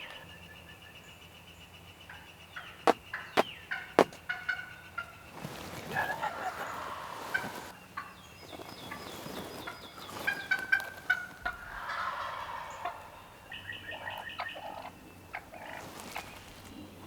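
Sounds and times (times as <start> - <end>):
turkey gobbling: 2.6 - 5.2, 5.8 - 8.1, 10.2 - 15.9.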